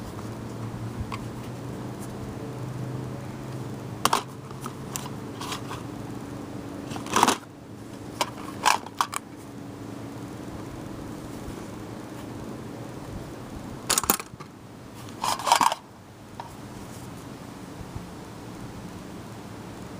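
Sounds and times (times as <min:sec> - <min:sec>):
steady low hum: 0:00.0 - 0:19.9
clicks and knocks of objects: 0:06.9 - 0:07.5, 0:13.9 - 0:15.8.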